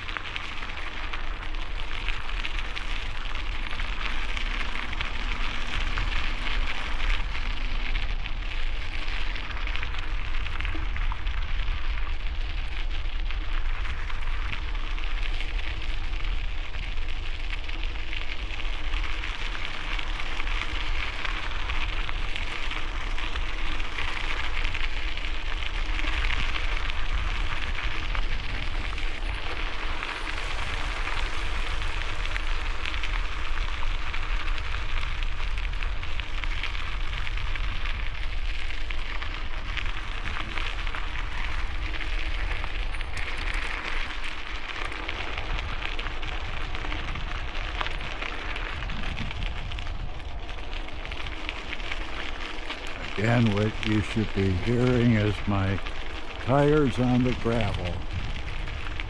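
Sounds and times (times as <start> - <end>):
bicycle tyres on gravel: 0.0 - 59.0
wind rumble on microphone: 0.0 - 59.0.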